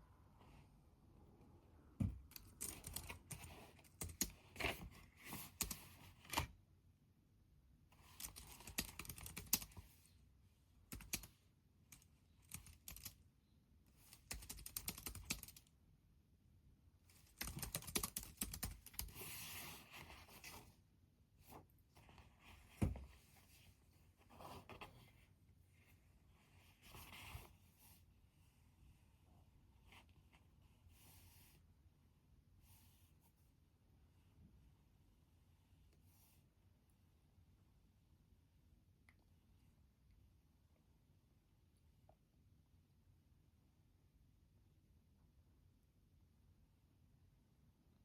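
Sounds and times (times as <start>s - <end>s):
computer keyboard typing: 2.3s - 4.4s, 8.2s - 9.8s, 10.9s - 13.2s, 14.2s - 15.7s, 17.1s - 19.1s.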